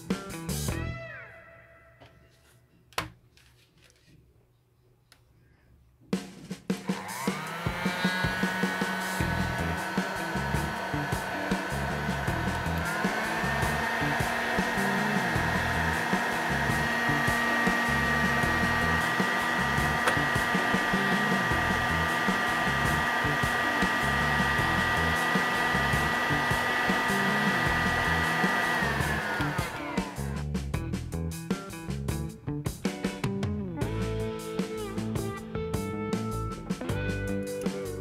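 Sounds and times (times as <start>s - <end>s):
heat gun blowing with fan whine: 6.9s - 30.4s.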